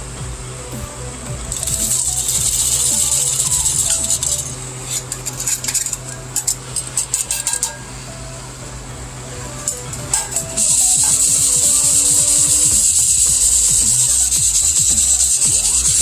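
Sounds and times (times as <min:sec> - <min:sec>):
appliance hum: 0:00.0 - 0:16.0
soft background music: 0:00.0 - 0:16.0
coffee beans rattling: 0:01.5 - 0:07.8, 0:09.6 - 0:16.0.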